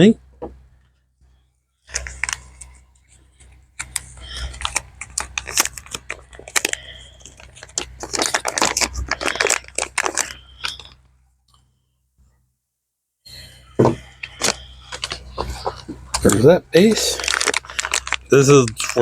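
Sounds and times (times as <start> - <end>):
plastic packaging crinkling: 1.9 - 11.0, 14.2 - 19.0.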